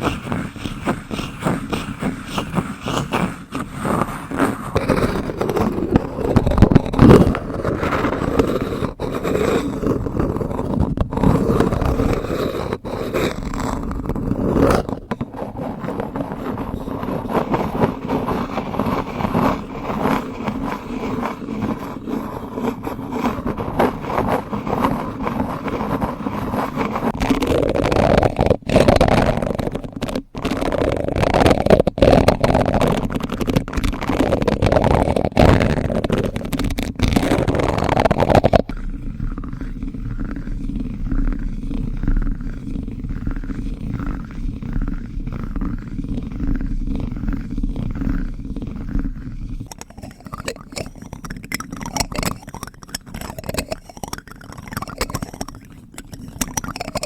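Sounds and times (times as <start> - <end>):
spoons scraping and rubbing: 0.0 - 57.0
small clicks: 49.6 - 57.0.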